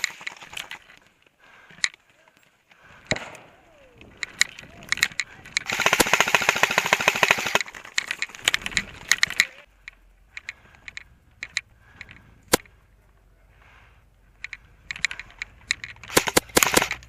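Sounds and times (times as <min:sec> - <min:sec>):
airsoft guns firing: 0:03.0 - 0:09.4, 0:16.0 - 0:17.0.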